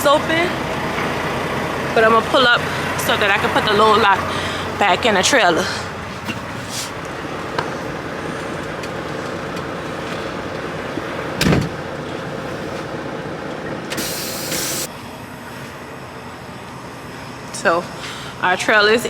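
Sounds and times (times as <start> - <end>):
semi truck engine running: 0.0 - 19.0
air hiss: 14.0 - 14.9.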